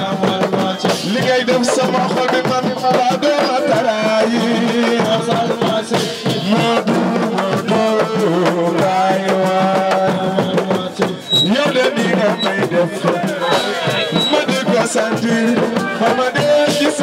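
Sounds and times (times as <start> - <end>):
fast hand-drum strokes: 0.0 - 17.0
held stepping melody: 10.1 - 16.4.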